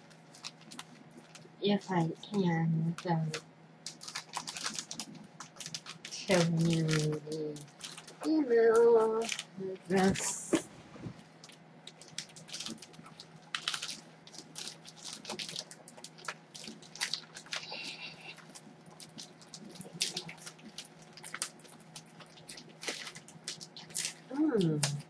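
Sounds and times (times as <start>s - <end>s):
packaging crinkling and rustling: 0.0s - 1.6s, 2.9s - 25.0s.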